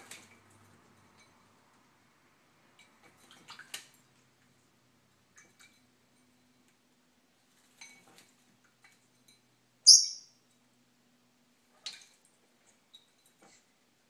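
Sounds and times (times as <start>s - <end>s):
parrot call: 9.9s - 10.3s.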